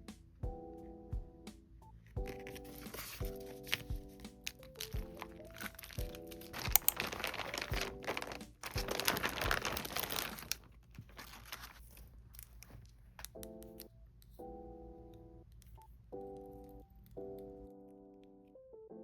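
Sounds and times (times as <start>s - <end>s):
soft background music: 0.0s - 19.0s
plastic packaging crinkling: 2.2s - 13.4s
scattered clicks: 4.2s - 8.9s.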